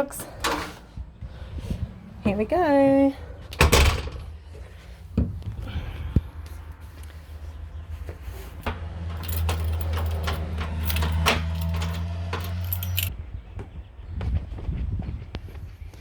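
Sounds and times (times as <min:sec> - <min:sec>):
metal jangling and clinking: 0:08.6 - 0:13.1.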